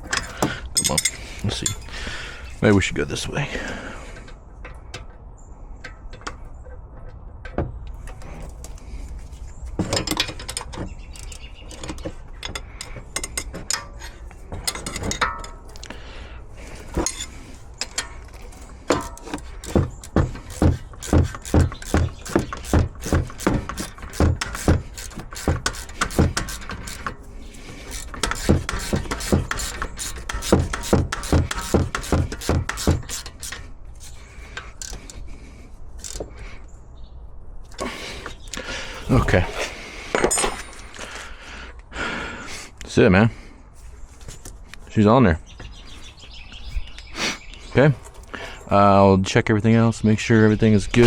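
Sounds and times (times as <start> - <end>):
metal tools clinking and clattering: 0.0 - 2.2, 9.8 - 16.0, 16.8 - 21.9, 39.0 - 41.3
hand ratchet clicking: 17.1 - 27.1, 27.8 - 33.6.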